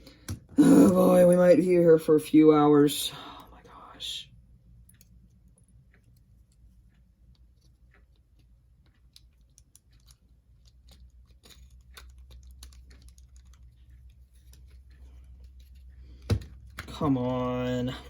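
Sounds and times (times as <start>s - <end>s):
low steady hum: 0.0s - 18.0s
plastic parts clicking and tapping: 7.3s - 17.0s.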